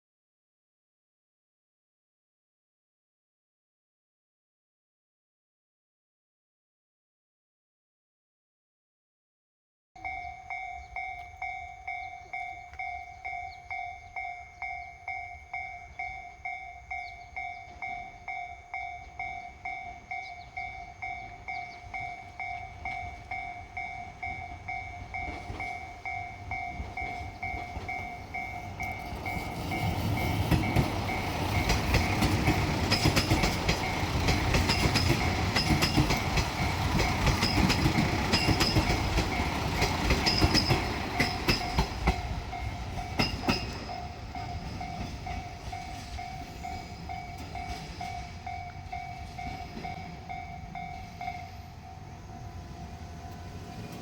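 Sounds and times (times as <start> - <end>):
diesel train passing: 10.0 - 54.0
level-crossing warning bell: 10.0 - 54.0
wheels clattering over rail joints: 16.0 - 54.0.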